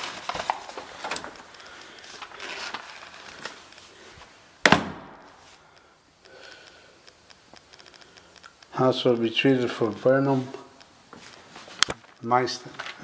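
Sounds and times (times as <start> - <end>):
handling rustling and clicks: 0.0 - 4.4, 6.6 - 13.0.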